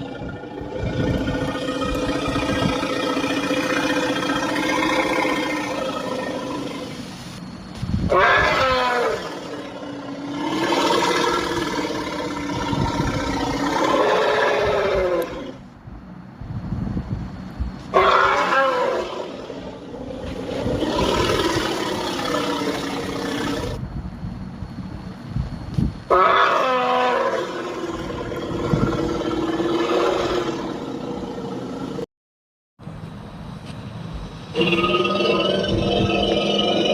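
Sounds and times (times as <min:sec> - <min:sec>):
dinosaur roar: 0:00.0 - 0:07.1, 0:08.1 - 0:15.6, 0:17.9 - 0:23.8, 0:26.1 - 0:32.0, 0:34.5 - 0:36.9.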